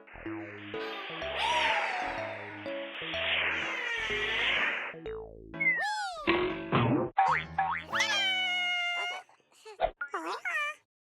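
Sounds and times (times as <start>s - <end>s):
cartoon music with bouncy bass: 0.0s - 8.5s
hissing sound effect: 2.1s - 5.0s.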